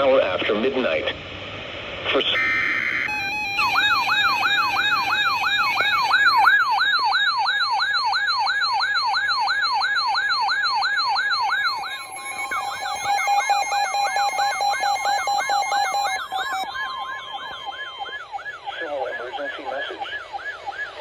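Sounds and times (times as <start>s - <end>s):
steady electronic tone: 2.4s - 6.6s, 11.5s - 18.3s
rising whoop alert siren: 2.4s - 21.0s.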